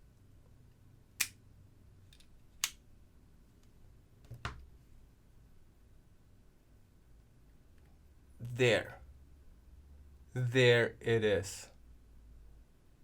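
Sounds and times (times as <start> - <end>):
wire stripper snapping clicks: 1.2 - 1.4.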